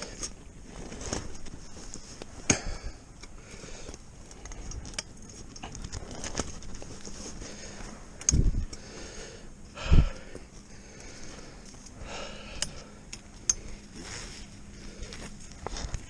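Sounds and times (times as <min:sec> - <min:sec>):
footsteps crunching through snow: 0:13.9 - 0:16.0.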